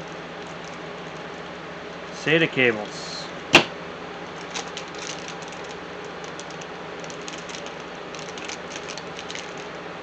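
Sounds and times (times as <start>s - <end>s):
steady low hum: 0.0s - 10.0s
packaging clicking and crinkling: 0.4s - 1.4s, 4.3s - 9.8s.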